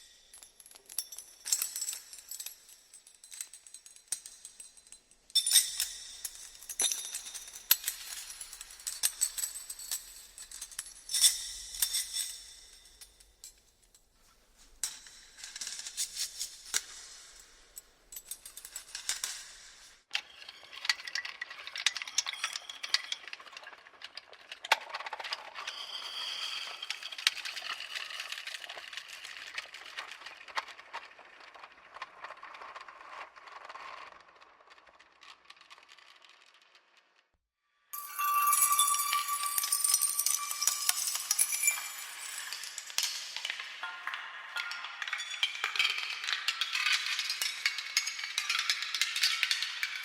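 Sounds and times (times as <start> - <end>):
chains rattling: 38.0 - 43.6.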